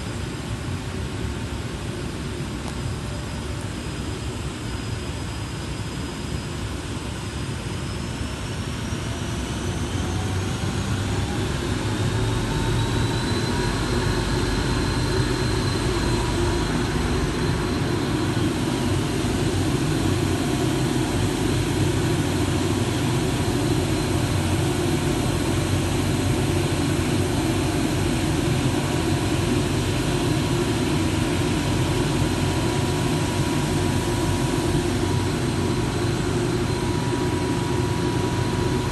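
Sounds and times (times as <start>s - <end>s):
grinding machine whine: 4.0s - 38.9s
loud even machine noise: 8.9s - 38.9s.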